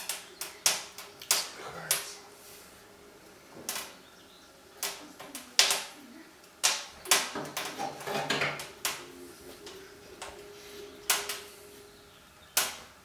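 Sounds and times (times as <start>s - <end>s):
sharp fire pops: 0.0s - 2.2s, 3.6s - 4.0s, 4.8s - 6.0s, 6.6s - 7.8s, 11.0s - 11.5s, 12.6s - 13.0s
wood fire crackling: 0.0s - 13.0s.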